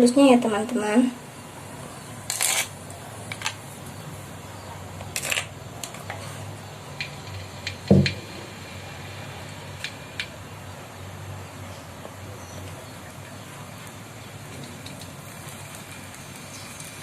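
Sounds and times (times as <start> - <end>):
metal utensil scraping a wok: 2.3 - 2.8
utensil knock: 7.7 - 8.3.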